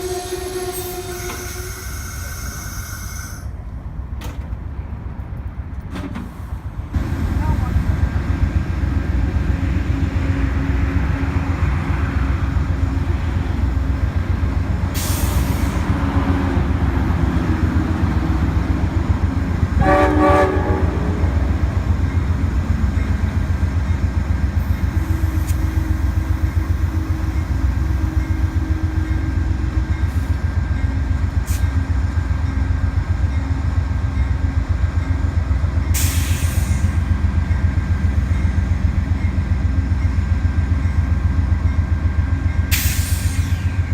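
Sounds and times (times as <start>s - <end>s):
train horn blast: 0.0s - 2.2s, 19.7s - 21.5s
diesel locomotive engine rumbling: 0.0s - 43.9s
air hiss: 14.9s - 15.9s, 36.0s - 37.0s, 42.7s - 43.9s.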